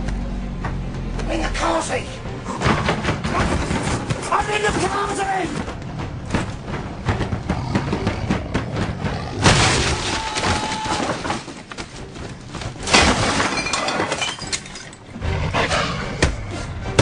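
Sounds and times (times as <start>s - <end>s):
sharp knocks and impacts: 2.5s - 13.5s
falling debris: 8.9s - 15.1s
glass shattering: 12.8s - 15.1s.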